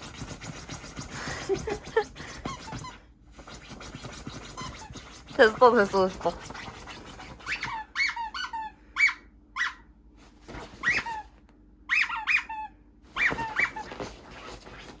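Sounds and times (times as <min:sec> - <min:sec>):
rubber squeaky dog toy: 0:02.2 - 0:09.8, 0:10.7 - 0:11.3, 0:11.9 - 0:14.3.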